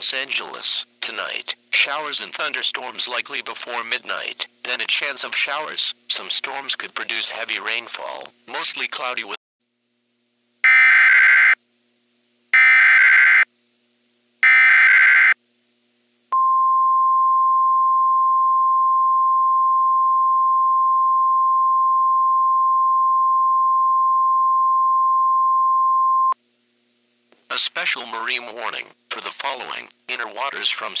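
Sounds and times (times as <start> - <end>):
steady warning alarm tone: 10.6 - 11.6, 12.6 - 13.5, 14.4 - 15.4
screeching digital data bursts: 10.7 - 11.6.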